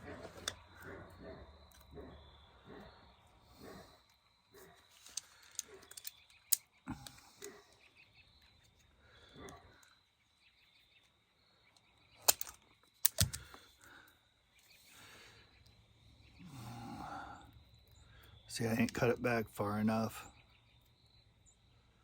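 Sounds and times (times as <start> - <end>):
hand tools clicking on cable: 5.0 - 7.6, 12.2 - 13.6.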